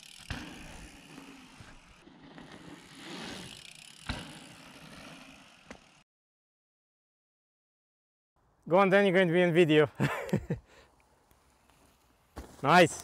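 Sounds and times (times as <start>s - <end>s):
bike tyres on dirt trail: 0.0s - 6.0s, 10.7s - 13.0s.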